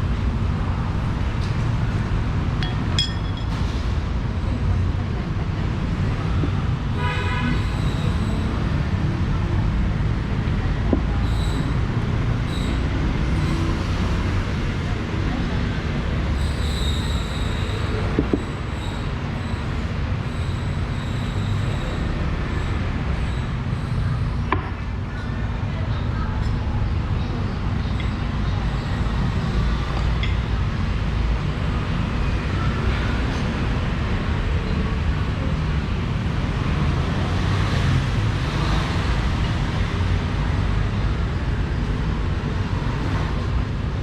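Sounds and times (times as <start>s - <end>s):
road traffic rumble: 0.0s - 44.0s
vehicle horn toot: 7.0s - 7.8s.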